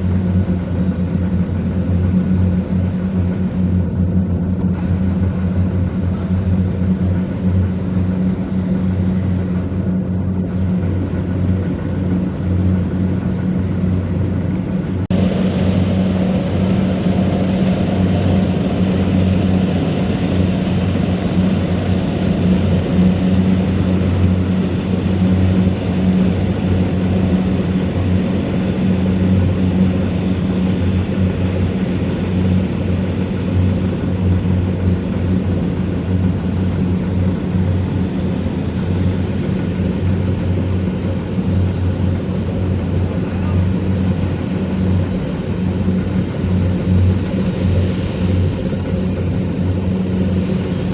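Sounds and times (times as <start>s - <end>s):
diesel engine drone: 0.0s - 50.9s.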